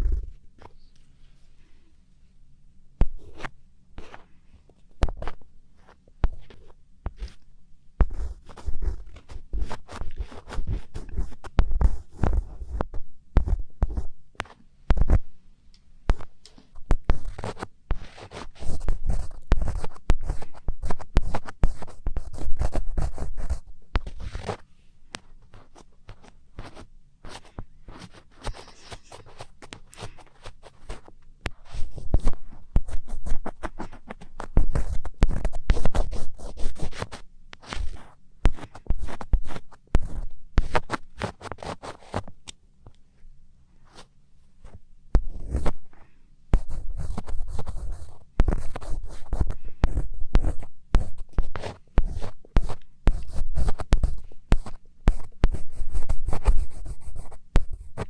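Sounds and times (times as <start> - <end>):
close scratching strokes: 8.0 - 14.1, 16.1 - 24.7, 25.4 - 42.3, 43.8 - 58.0.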